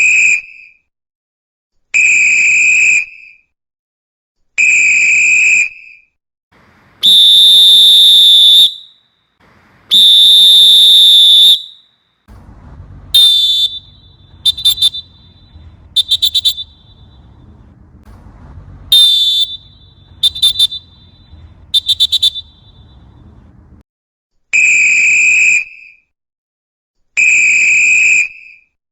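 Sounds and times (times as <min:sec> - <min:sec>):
referee's whistle blasts: 0:07.0 - 0:08.9, 0:09.9 - 0:23.8
low rumble: 0:12.3 - 0:23.8.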